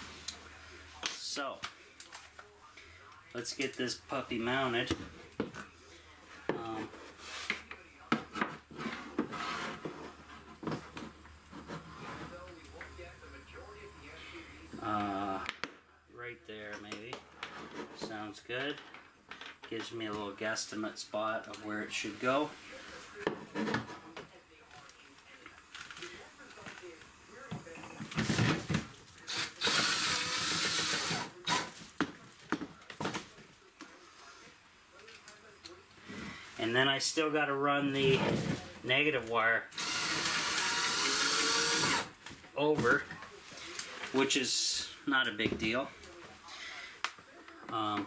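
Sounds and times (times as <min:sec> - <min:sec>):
cordless drill driving screw: 0:29.3 - 0:31.7, 0:39.7 - 0:42.1.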